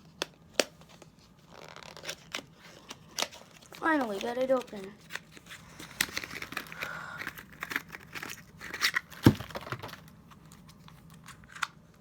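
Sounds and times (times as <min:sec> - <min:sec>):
plastic packaging crinkling: 0:01.4 - 0:11.6.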